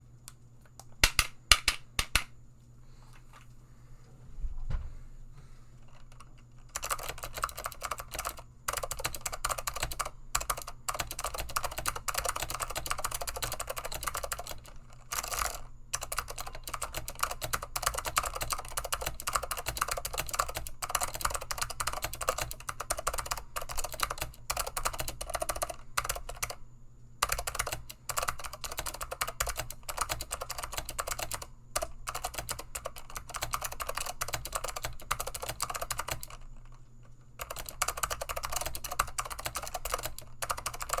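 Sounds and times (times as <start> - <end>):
fast keyboard typing: 5.8 - 26.6, 27.2 - 36.8, 37.4 - 41.0.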